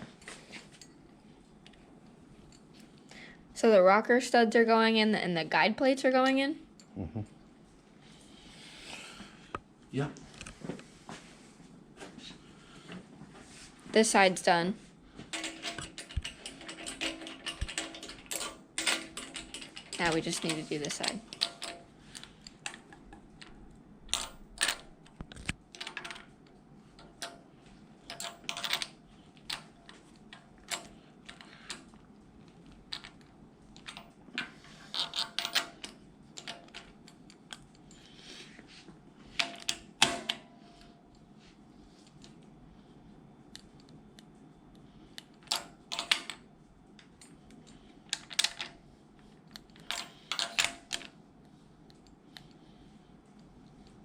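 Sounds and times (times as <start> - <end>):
metal parts clicking and clinking: 15.3 - 27.4, 28.0 - 38.1, 39.4 - 40.4, 45.2 - 46.4, 47.0 - 48.8, 49.4 - 51.2.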